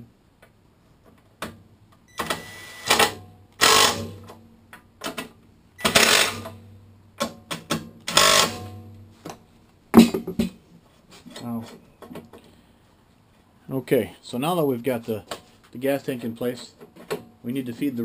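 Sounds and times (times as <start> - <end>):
power tool mechanical rattling: 2.9 - 4.1, 5.8 - 6.5, 8.1 - 8.7.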